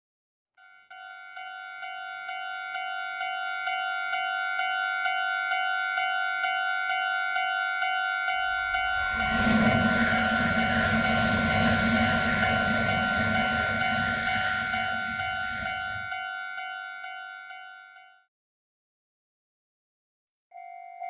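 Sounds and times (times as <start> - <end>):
railroad crossing bell ringing: 0.6 - 18.2
approaching train rumble: 8.4 - 16.4.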